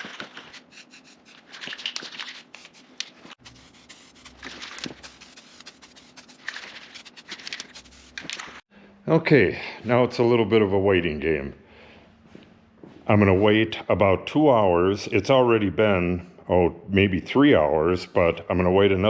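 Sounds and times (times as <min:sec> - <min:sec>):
paint rubbing and scraping on metal: 0:00.3 - 0:08.6.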